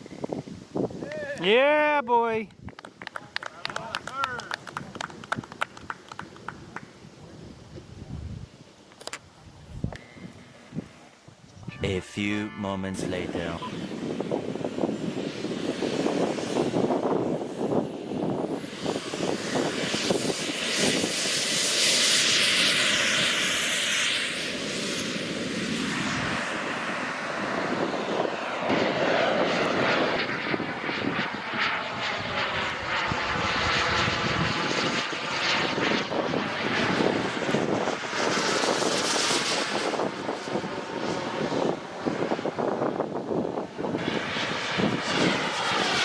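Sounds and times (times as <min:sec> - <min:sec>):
model jet turbine whine: 0:13.2 - 0:46.0.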